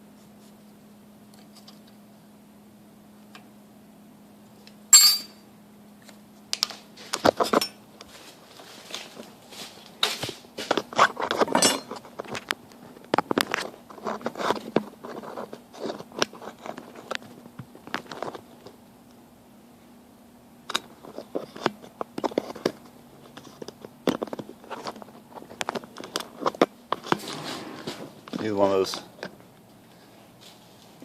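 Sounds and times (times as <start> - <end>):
faint steady hum: 0.0 - 31.0
metal parts clinking and scraping: 11.3 - 12.0.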